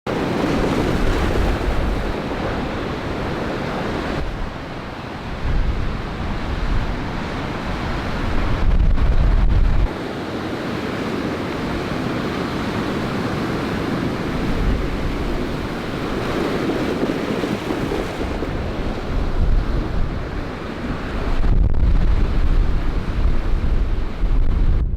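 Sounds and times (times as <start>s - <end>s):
lake waves crashing: 0.1s - 24.5s
wind buffeting microphone: 0.1s - 24.9s.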